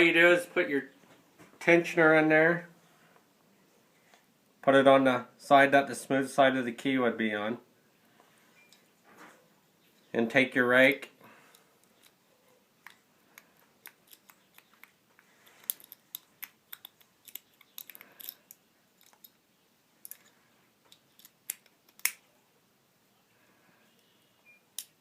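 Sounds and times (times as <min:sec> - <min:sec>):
lock pick clicking and scraping: 0:11.5 - 0:12.2, 0:12.8 - 0:19.4, 0:20.0 - 0:22.2, 0:24.7 - 0:25.0.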